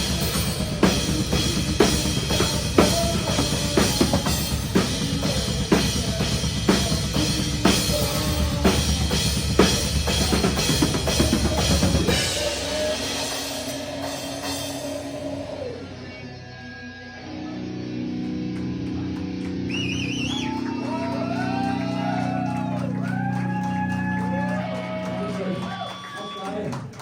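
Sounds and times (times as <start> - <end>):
loud drum kit: 0.0 - 16.2
metalcore band playing: 0.0 - 25.8.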